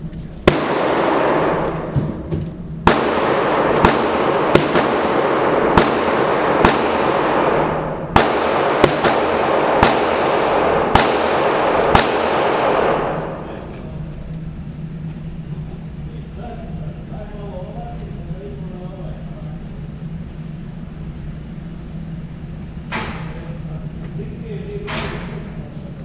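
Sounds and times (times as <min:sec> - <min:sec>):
gunshots echoing indoors: 0:00.4 - 0:14.1.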